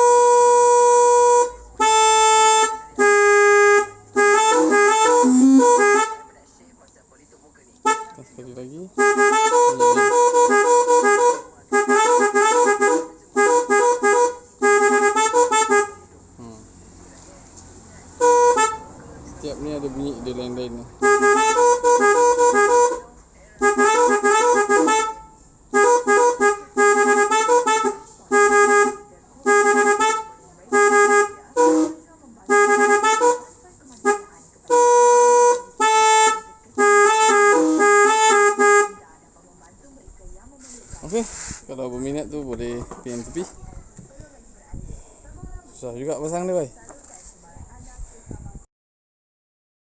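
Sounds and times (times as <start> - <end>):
musical horn tooting melody: 0.0 - 6.4, 7.8 - 16.1, 18.2 - 19.0, 21.0 - 23.0, 23.6 - 39.0.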